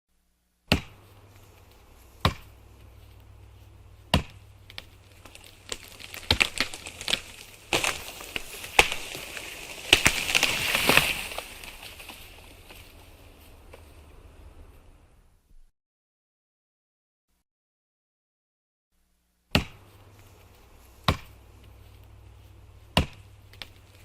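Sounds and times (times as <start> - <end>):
axe chopping tree trunk: 0.7 - 1.1, 2.2 - 2.6, 4.1 - 11.8, 19.5 - 19.9, 21.0 - 21.4, 22.9 - 23.8
wood cracking: 0.7 - 13.8, 22.8 - 24.0.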